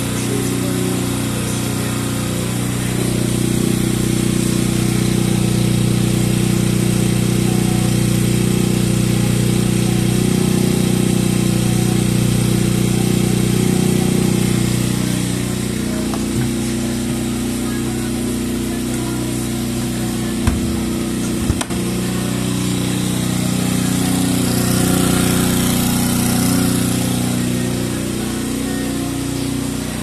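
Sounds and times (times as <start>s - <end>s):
generator engine running: 0.0s - 30.0s.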